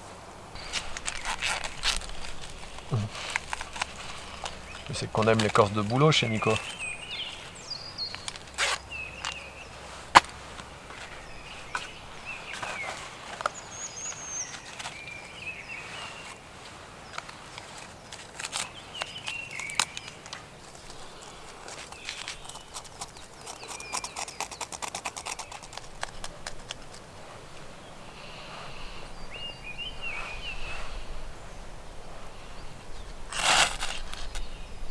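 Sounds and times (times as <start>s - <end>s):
twigs snapping and crackling: 0.6s - 15.4s, 17.1s - 27.1s, 33.2s - 34.6s
bird chirps: 0.6s - 16.4s, 27.9s - 31.6s.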